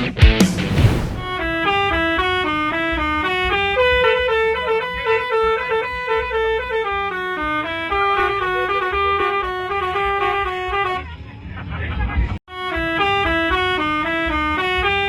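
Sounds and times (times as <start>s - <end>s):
noisy crash: 0.3s - 1.6s.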